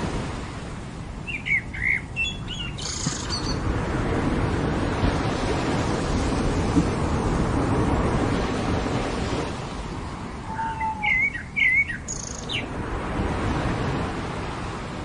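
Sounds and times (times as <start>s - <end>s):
ocean surf on beach: 0.0s - 15.0s
songbird calling: 1.3s - 3.6s, 10.5s - 12.7s.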